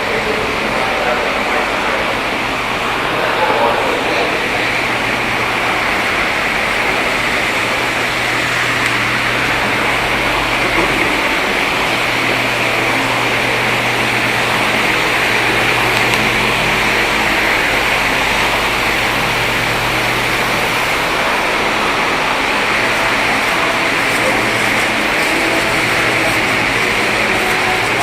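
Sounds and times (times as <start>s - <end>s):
train rumble and hiss: 0.0s - 28.0s
low steady hum: 6.6s - 20.7s.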